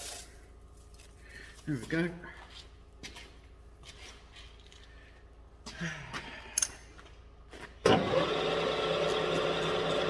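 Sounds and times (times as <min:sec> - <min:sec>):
milling machine motor humming: 0:07.9 - 0:10.0.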